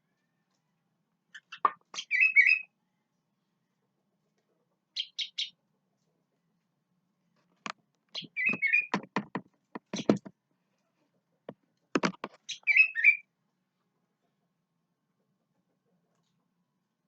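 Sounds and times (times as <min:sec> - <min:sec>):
sharp clicks and knocks: 0:07.6 - 0:10.4, 0:11.5 - 0:12.4
bird warbling: 0:08.2 - 0:09.0, 0:12.5 - 0:13.2.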